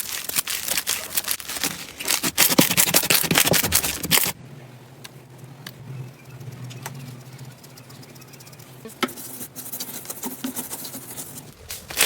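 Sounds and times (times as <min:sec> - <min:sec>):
low hum: 0:03.6 - 0:12.0.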